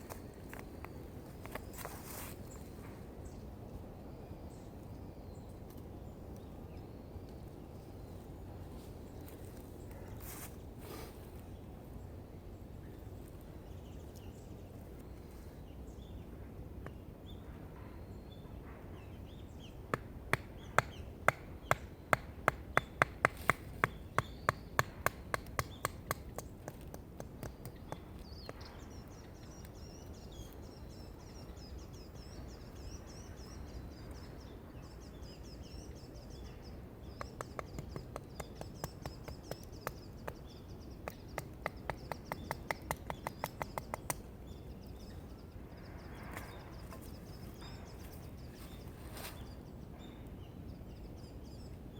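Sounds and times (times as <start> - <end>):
outdoor background noise: 0.0 - 51.9
sharp evenly spaced knocks: 19.8 - 28.9, 37.1 - 44.4
faint bird chirps: 27.6 - 51.8.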